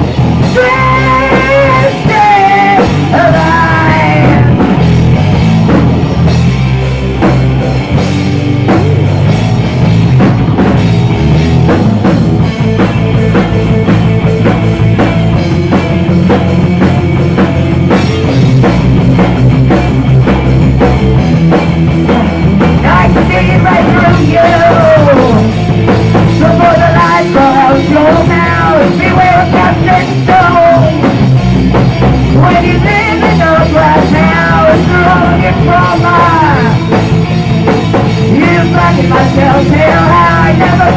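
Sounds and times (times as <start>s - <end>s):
person singing: 0.0s - 4.8s, 22.8s - 25.6s, 26.3s - 31.2s, 32.3s - 37.0s, 38.2s - 40.9s
rock band playing live: 0.0s - 40.9s.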